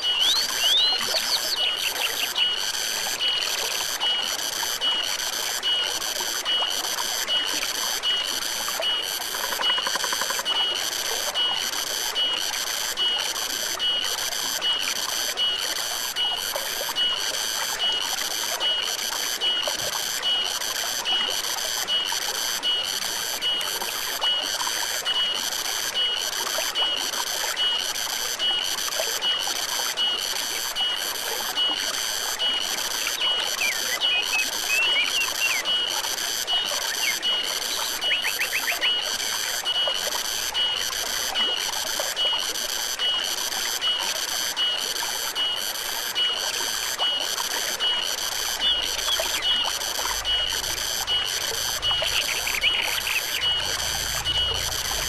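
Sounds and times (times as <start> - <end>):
pulsing high animal call: 0.0 - 2.4, 48.5 - 55.0
stream trickling: 0.0 - 55.0.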